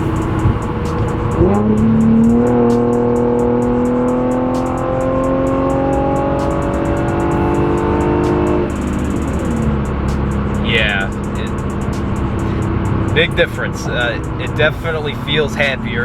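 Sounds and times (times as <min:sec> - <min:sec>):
car engine accelerating: 0:00.0 - 0:16.0.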